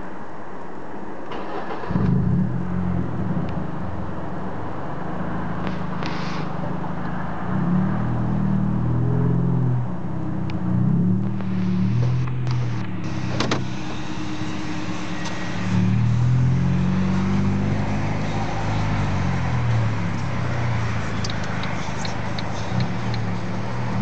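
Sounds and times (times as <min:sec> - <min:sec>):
car engine starting and idling: 0:01.2 - 0:24.0
engine throttle blips: 0:08.8 - 0:24.0.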